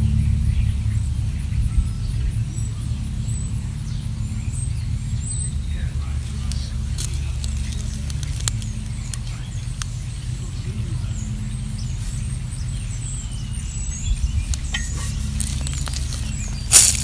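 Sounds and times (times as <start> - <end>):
steady low rumble: 0.0 - 17.0
small birds chirping: 0.5 - 17.0
sharp clicks: 6.4 - 10.0.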